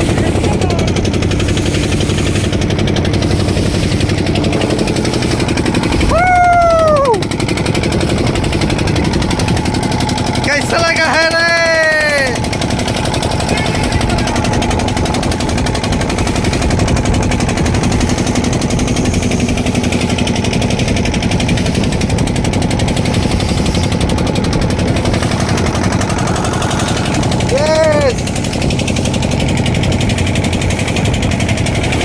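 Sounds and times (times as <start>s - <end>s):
boat engine chugging: 0.0s - 32.0s
short falling-pitched call: 5.9s - 7.2s.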